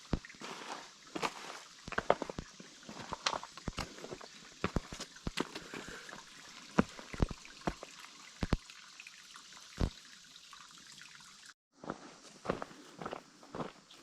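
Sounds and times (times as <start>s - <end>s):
footsteps on a trail: 0.0s - 8.6s, 11.8s - 14.0s.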